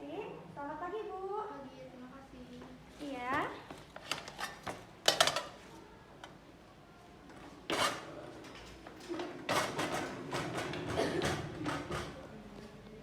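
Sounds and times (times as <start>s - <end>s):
objects clattering and scraping: 3.3s - 5.7s.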